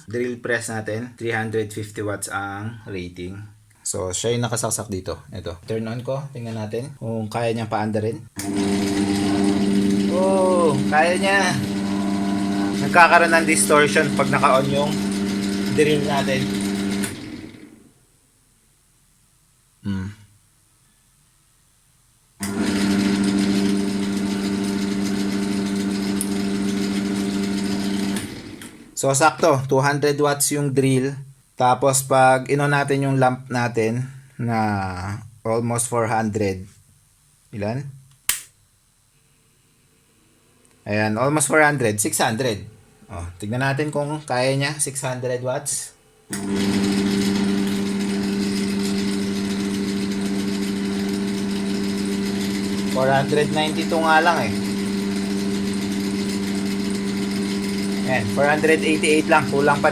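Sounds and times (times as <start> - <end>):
drill press motor humming: 8.4 - 18.0, 22.4 - 29.0, 46.3 - 59.9.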